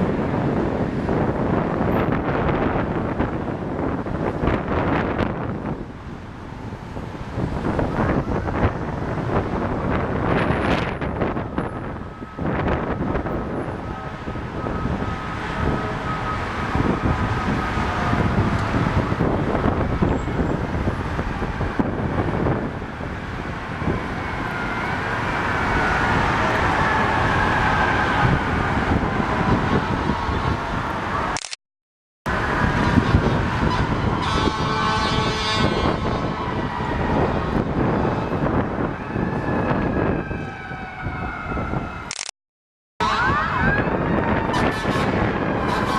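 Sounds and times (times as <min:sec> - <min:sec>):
wind buffeting microphone: 0:00.0 - 0:31.4, 0:32.3 - 0:42.1, 0:43.0 - 0:45.9
city traffic: 0:00.0 - 0:31.6, 0:32.3 - 0:42.4, 0:43.0 - 0:45.9
faint siren wailing: 0:07.4 - 0:31.4, 0:32.3 - 0:42.1, 0:43.0 - 0:45.9.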